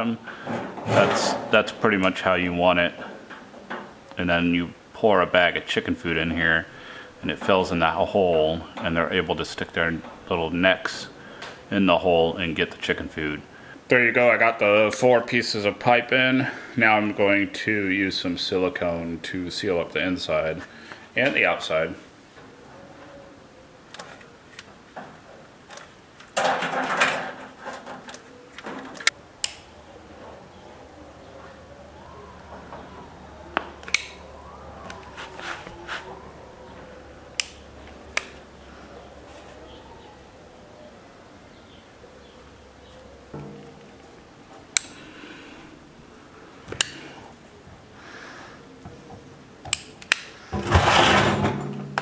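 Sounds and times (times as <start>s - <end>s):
faint handling noise: 20.5s - 31.8s, 32.4s - 40.0s
caulking gun clicks: 33.8s - 34.2s.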